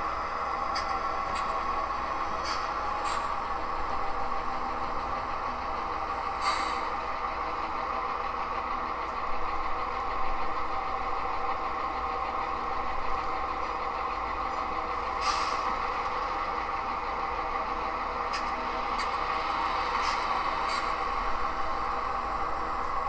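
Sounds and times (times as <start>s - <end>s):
model locomotive diesel idle: 0.0s - 23.0s
short air hiss: 6.4s - 6.9s, 15.2s - 15.8s.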